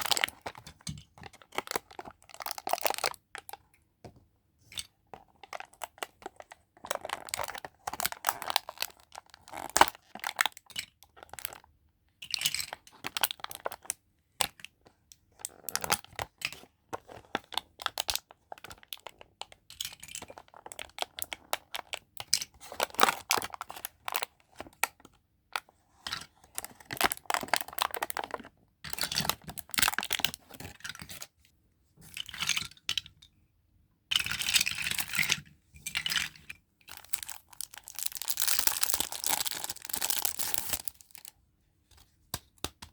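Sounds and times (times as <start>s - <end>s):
packaging crinkling and tearing: 36.9s - 41.3s
sharp clicks and taps: 41.9s - 42.9s.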